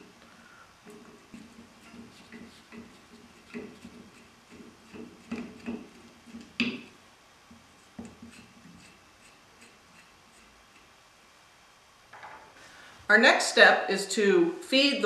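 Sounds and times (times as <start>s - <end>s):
hands clicking on fan parts: 0.8s - 6.9s
small knocks: 0.9s - 6.9s, 12.1s - 12.6s.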